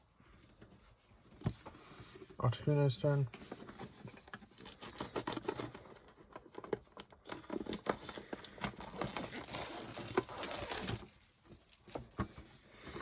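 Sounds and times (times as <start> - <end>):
packaging crinkling and tearing: 3.6 - 11.8.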